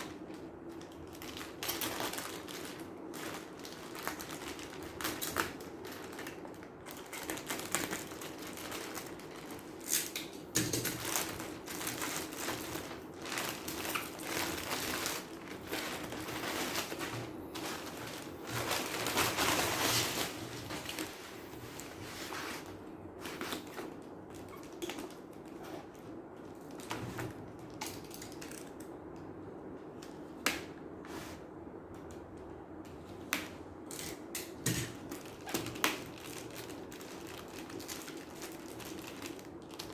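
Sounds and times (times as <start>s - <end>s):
cardboard and plastic rustling: 0.0s - 28.9s, 33.0s - 39.9s
faint steady hum: 0.0s - 39.9s.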